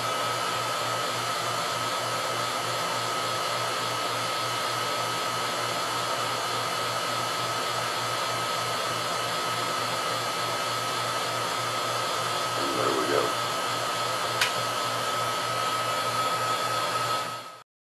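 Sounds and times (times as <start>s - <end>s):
vacuum pump hiss and hum: 0.0s - 17.6s
constant high whine: 12.0s - 13.8s.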